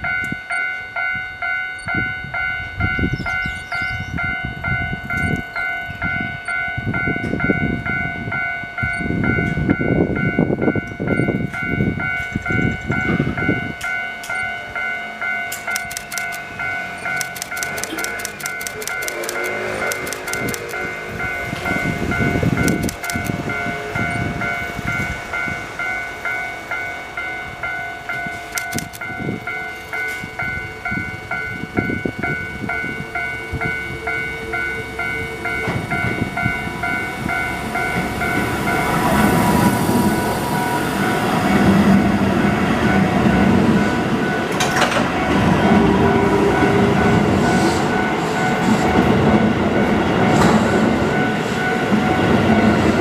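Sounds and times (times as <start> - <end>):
level-crossing warning bell: 0.0 - 53.0
train wheel clatter: 17.0 - 25.5, 35.0 - 53.0.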